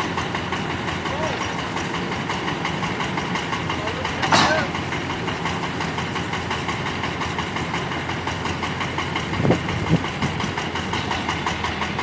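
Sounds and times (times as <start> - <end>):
diesel engine running: 0.0 - 12.0.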